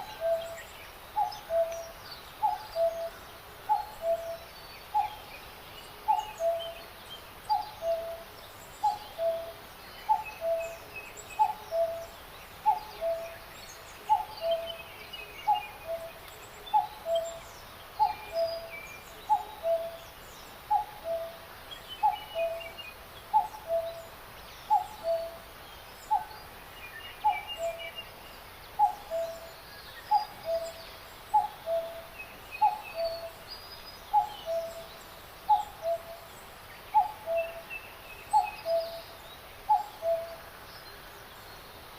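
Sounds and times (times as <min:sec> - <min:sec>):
small birds chirping: 0:00.0 - 0:41.9.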